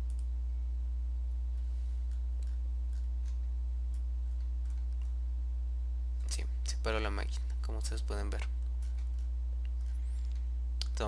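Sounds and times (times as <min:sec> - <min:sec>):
low electrical hum: 0:00.0 - 0:11.0
computer mouse clicks: 0:02.0 - 0:05.2.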